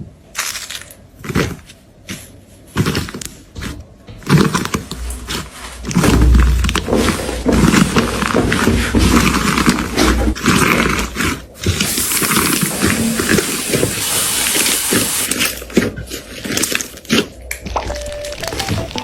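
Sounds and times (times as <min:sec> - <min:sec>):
scuffling and clicking: 0:14.8 - 0:19.0.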